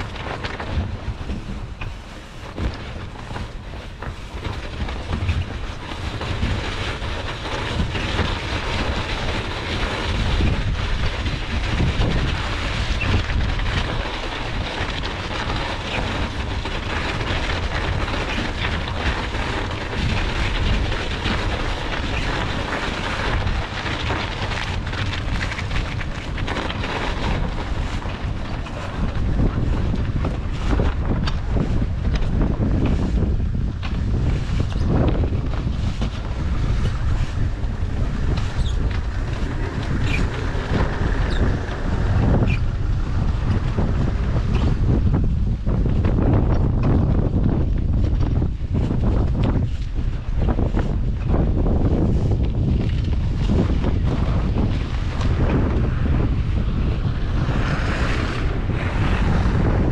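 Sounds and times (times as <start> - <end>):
wind buffeting microphone: 0.0 - 59.9.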